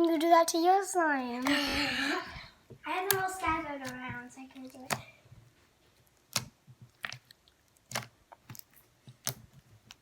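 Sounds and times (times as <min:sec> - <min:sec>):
sticky slime clicks and pops: 0:06.2 - 0:10.0.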